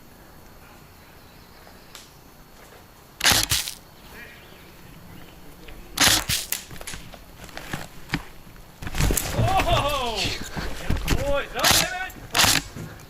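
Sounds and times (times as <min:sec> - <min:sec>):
airsoft gun rapid bursts: 0:03.2 - 0:03.8, 0:06.0 - 0:06.6, 0:11.6 - 0:12.8
single gun cracks: 0:03.2 - 0:03.8, 0:06.0 - 0:07.0, 0:11.6 - 0:12.8.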